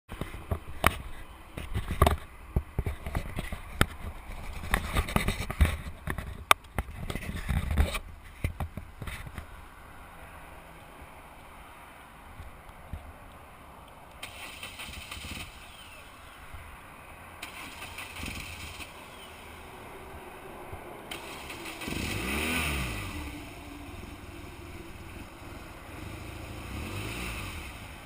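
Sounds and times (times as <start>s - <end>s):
motorcycle engine firing unevenly: 14.2s - 15.8s.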